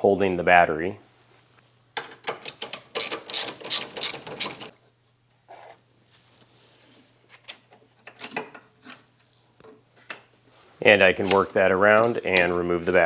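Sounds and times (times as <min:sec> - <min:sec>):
ratchet wrench clicking: 0:02.5 - 0:04.7.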